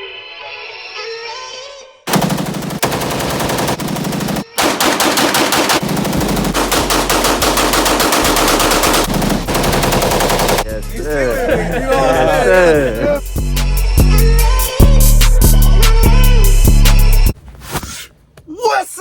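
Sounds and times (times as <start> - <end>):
rapid automatic gunfire: 2.1 - 10.7
soft music: 10.6 - 17.1.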